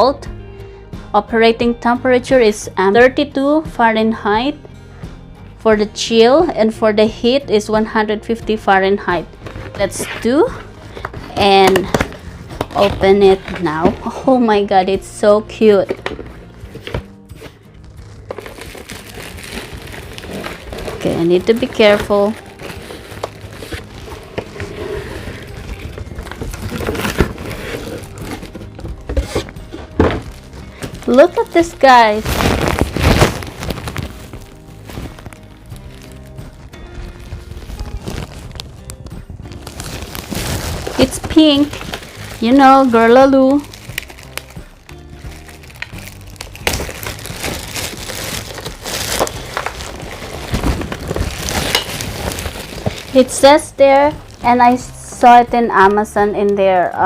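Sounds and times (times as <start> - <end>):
packaging crinkling and rustling: 9.3 - 14.2, 15.8 - 54.9.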